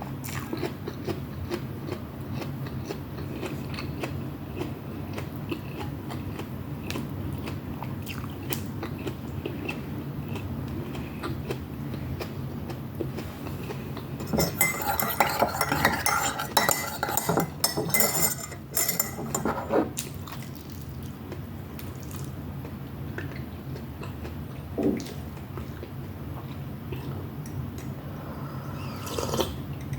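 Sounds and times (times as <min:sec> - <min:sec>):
cutlery clinking on a plate: 0:14.2 - 0:19.8.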